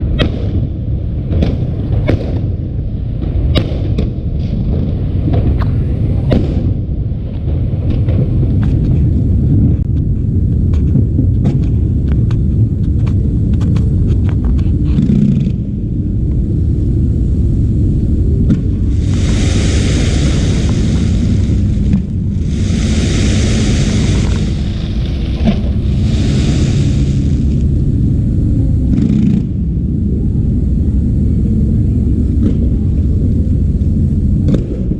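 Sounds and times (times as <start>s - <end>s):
heavy low rumble: 0.0s - 34.9s
loud firework hissing: 18.8s - 28.0s
firework bangs: 18.9s - 27.6s.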